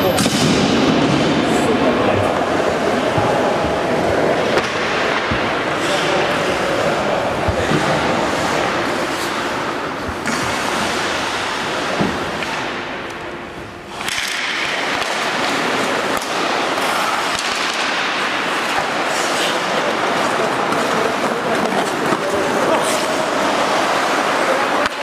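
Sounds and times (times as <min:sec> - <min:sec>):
skates scraping ice: 0:02.3 - 0:12.7, 0:13.9 - 0:25.0
hockey sticks and puck knocking: 0:13.9 - 0:19.1.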